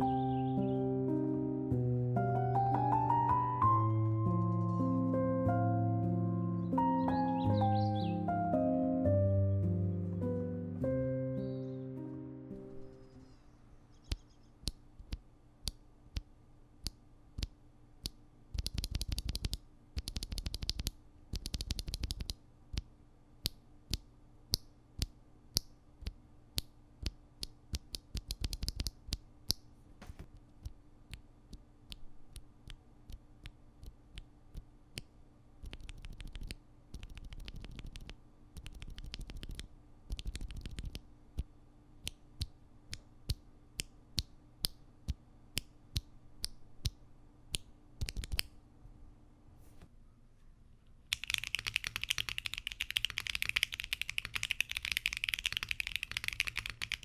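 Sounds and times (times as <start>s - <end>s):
mechanical keyboard switches clacking: 48.0s - 48.5s, 51.1s - 57.0s.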